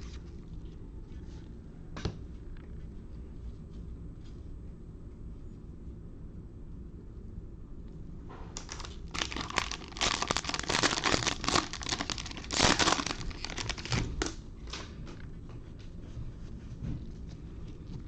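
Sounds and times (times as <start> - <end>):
plastic wrapper crinkling and tearing: 8.6 - 14.4.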